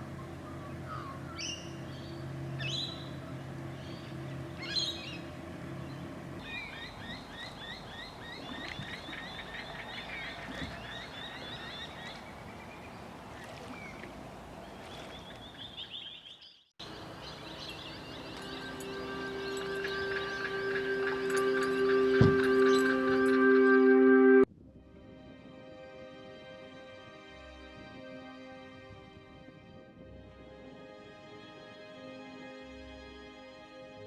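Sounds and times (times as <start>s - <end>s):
wild birds calling: 0.0s - 23.5s
birds chattering chirps: 0.2s - 23.2s
low hum: 16.8s - 25.2s.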